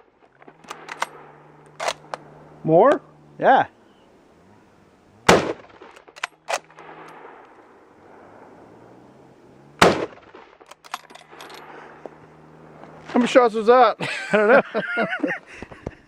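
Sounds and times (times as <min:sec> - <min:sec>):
sharp cracks: 0:00.0 - 0:03.2, 0:05.0 - 0:13.7
loud gunshots: 0:05.2 - 0:07.4, 0:09.8 - 0:11.8.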